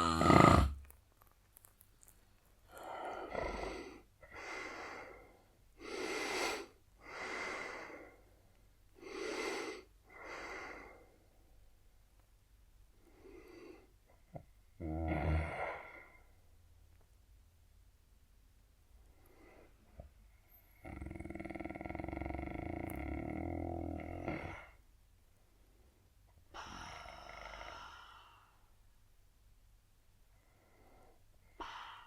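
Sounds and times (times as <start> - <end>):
man snoring heavily: 0.0 - 0.8, 14.8 - 15.8, 20.8 - 24.7
faint breathing: 26.5 - 28.8, 30.3 - 32.0.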